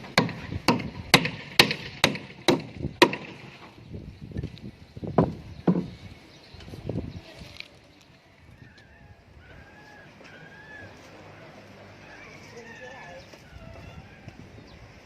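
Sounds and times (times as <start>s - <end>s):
hammer striking wooden boards: 0.0s - 3.7s, 5.2s - 6.0s.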